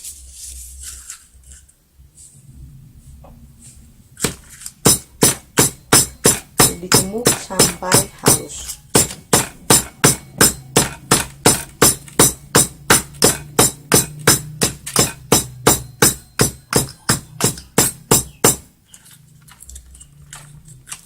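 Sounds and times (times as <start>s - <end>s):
pestle pounding in a mortar: 4.2s - 18.8s.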